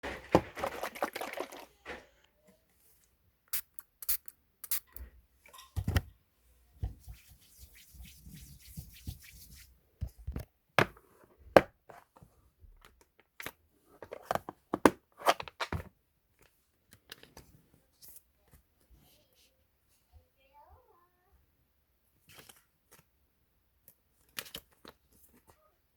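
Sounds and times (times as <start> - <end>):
plastic packing material crinkling: 0.0 - 2.1.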